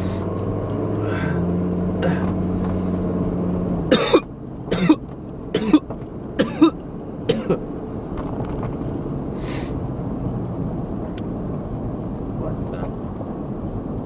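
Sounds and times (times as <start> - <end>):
man hiccuping: 1.0 - 2.4, 3.9 - 5.0, 5.6 - 7.6.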